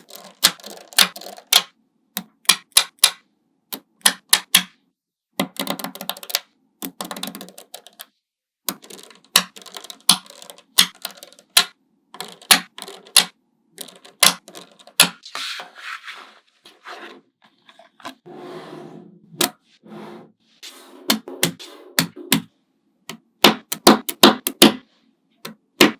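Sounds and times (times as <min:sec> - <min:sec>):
balls rattling and rolling: 0:00.0 - 0:01.6, 0:08.8 - 0:15.2
magnetic balls clicking together: 0:00.0 - 0:03.2, 0:08.7 - 0:15.2, 0:23.1 - 0:24.8.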